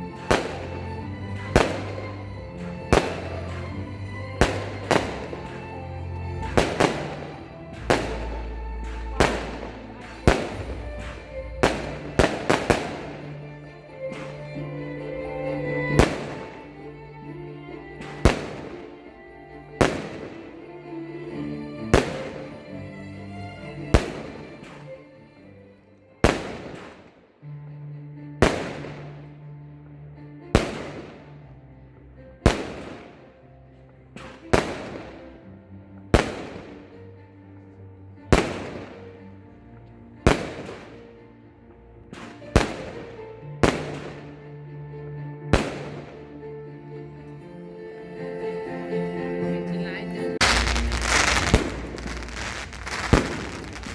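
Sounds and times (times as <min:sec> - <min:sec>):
fireworks banging: 0:00.0 - 0:13.5, 0:14.1 - 0:14.6, 0:15.5 - 0:16.8, 0:17.9 - 0:19.1, 0:19.7 - 0:20.9, 0:21.8 - 0:22.8, 0:23.6 - 0:25.1, 0:26.2 - 0:27.2, 0:28.4 - 0:29.3, 0:30.6 - 0:31.4, 0:32.4 - 0:33.3, 0:34.2 - 0:35.4, 0:36.2 - 0:37.0, 0:38.3 - 0:39.1, 0:40.2 - 0:41.1, 0:42.1 - 0:44.4, 0:45.5 - 0:46.4, 0:50.4 - 0:53.9
background music: 0:00.0 - 0:53.9.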